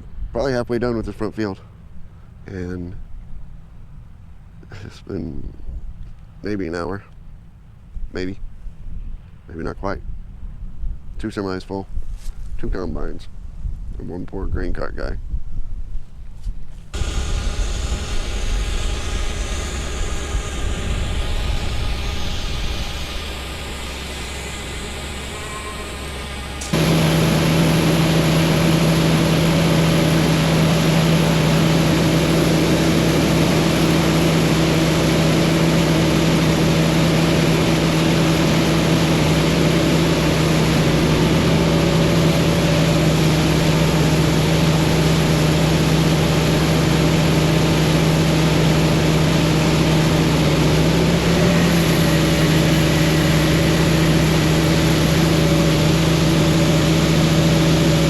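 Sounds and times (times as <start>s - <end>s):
farm machinery engine humming: 16.8s - 58.0s.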